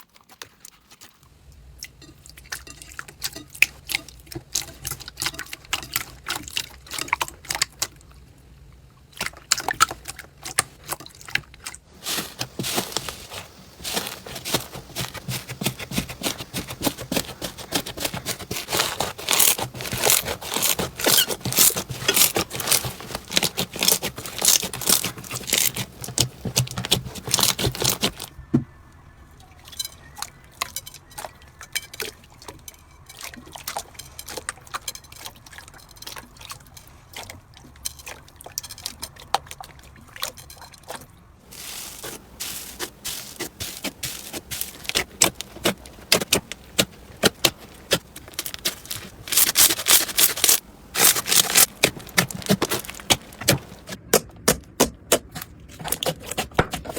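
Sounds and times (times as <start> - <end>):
slime crackling and popping: 12.0 - 28.3, 41.5 - 54.0.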